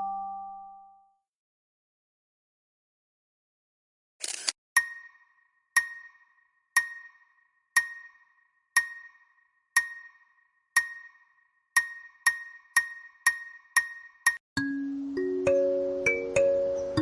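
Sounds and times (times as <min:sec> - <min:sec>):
bell-like phone ringtone ping: 0:00.0 - 0:00.9, 0:04.8 - 0:14.4.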